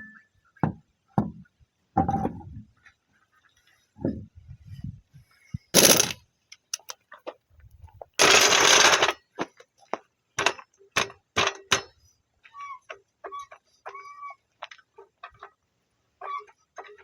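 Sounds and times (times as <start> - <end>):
hand tools clicking and clinking: 5.8 - 6.9, 8.2 - 9.2, 10.4 - 11.9.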